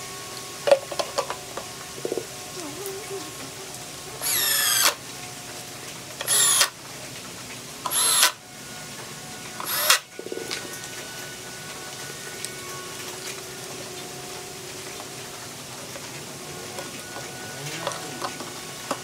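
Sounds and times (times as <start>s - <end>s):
electric drill motor whine: 3.6s - 6.8s, 7.8s - 19.0s.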